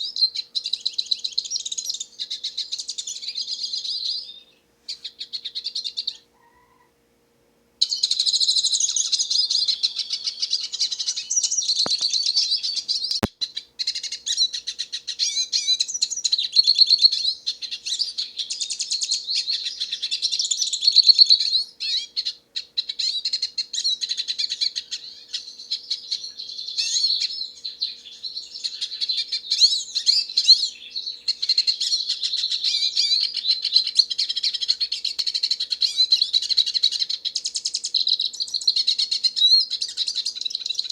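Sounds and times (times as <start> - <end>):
bird twittering song: 0.0 - 6.8, 7.8 - 40.9
sharp click: 11.8 - 12.2, 13.0 - 13.3.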